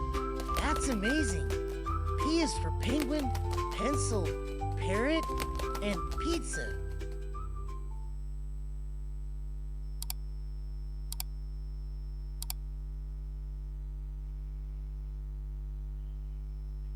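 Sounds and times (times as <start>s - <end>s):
low electrical hum: 6.8s - 16.9s
sharp double clicks: 10.0s - 10.2s.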